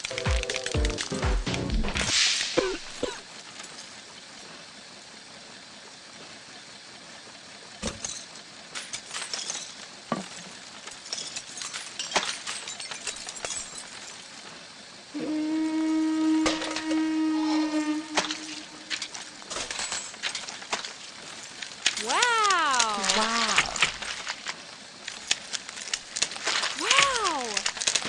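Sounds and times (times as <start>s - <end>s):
steady hiss: 2.0s - 7.7s.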